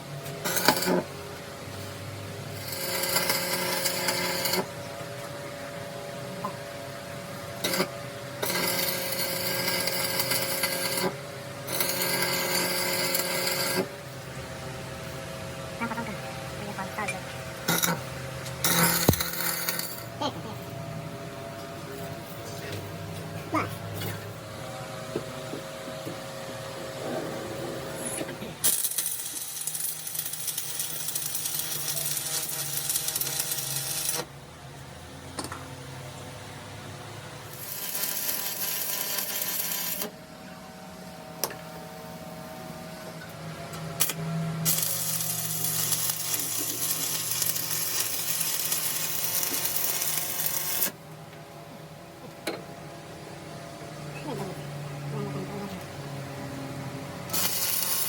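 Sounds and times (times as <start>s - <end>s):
power tool hissing on metal: 44.6s - 51.0s, 57.3s - 58.0s.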